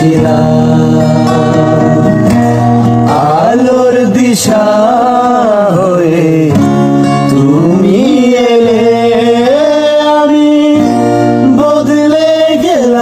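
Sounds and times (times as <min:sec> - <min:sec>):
instrumental accompaniment: 0:00.0 - 0:12.6
person singing long sliding notes: 0:00.0 - 0:13.0.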